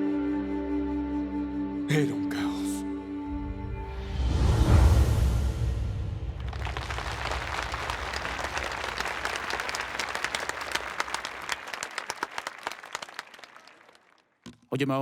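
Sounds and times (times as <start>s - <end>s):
audience applauding: 6.2s - 14.2s.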